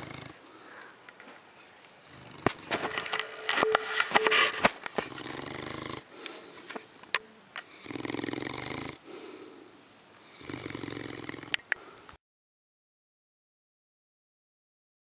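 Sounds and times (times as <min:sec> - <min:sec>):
dog snoring: 0:00.0 - 0:00.4, 0:05.0 - 0:06.1, 0:07.7 - 0:09.1, 0:10.4 - 0:11.6.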